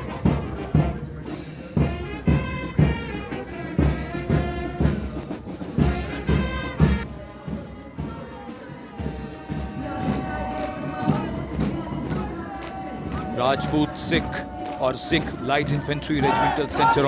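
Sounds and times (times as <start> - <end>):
military brass band playing a march: 0.0 - 17.0
bass drum beat: 9.5 - 17.0.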